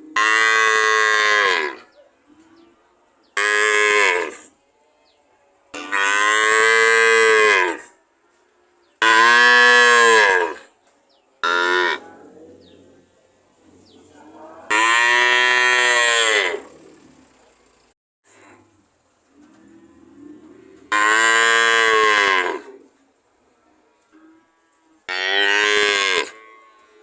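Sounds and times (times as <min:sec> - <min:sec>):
cow mooing: 0:00.0 - 0:02.0, 0:03.4 - 0:04.5, 0:05.7 - 0:08.0, 0:09.0 - 0:10.7, 0:11.4 - 0:12.9, 0:13.9 - 0:17.1, 0:19.4 - 0:22.8, 0:24.1 - 0:27.0
faint low moos: 0:01.4 - 0:05.8, 0:11.6 - 0:25.1.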